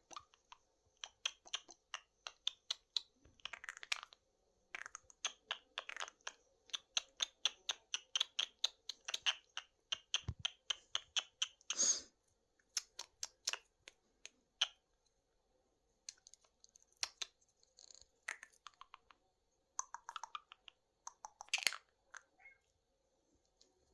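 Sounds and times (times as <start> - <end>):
parakeet clicking: 0.1 - 11.8, 19.8 - 22.3.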